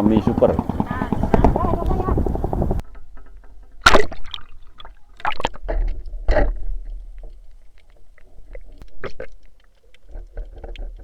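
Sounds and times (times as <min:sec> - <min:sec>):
water sloshing and crackling: 0:00.2 - 0:11.0
water splashing: 0:03.8 - 0:11.0.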